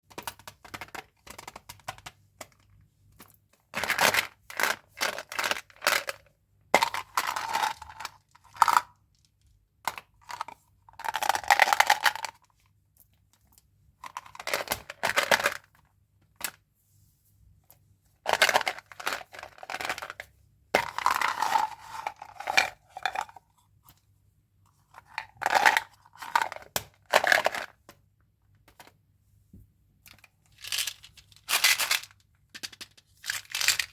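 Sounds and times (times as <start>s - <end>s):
candy wrappers crinkling: 30.5s - 33.9s.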